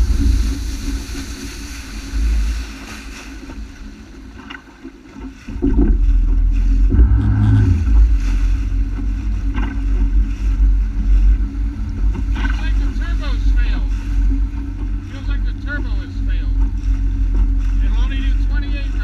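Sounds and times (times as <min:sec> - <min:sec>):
personal watercraft engine: 0:00.0 - 0:19.0
wind buffeting microphone: 0:05.4 - 0:19.0.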